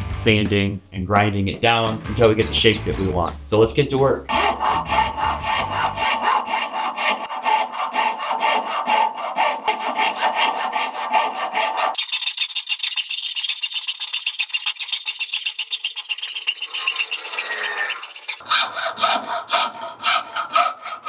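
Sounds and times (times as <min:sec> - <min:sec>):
hand tool rasping on bone: 0:03.8 - 0:21.0.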